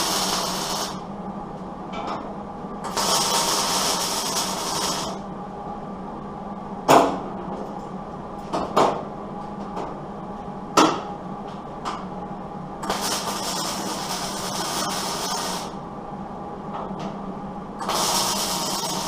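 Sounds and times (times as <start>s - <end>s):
welding hissing and crackling: 0.0s - 1.0s, 2.9s - 5.2s, 12.8s - 15.8s, 17.8s - 19.0s
steady low hum: 0.0s - 19.0s.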